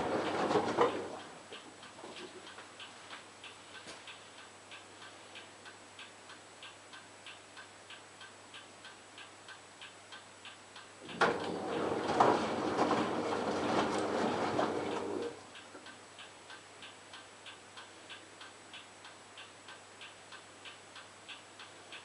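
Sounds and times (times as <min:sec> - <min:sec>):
washing machine rushing water: 0:00.0 - 0:01.2, 0:11.2 - 0:15.4
washing machine ticking: 0:00.0 - 0:22.0.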